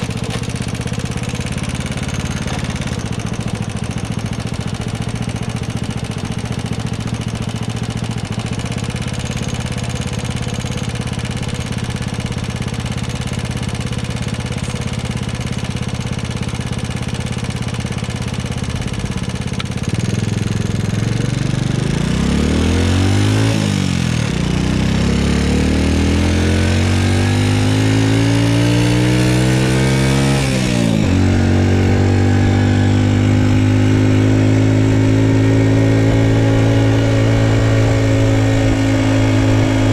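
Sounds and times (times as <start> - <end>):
motorcycle engine revving: 0.0 - 39.9.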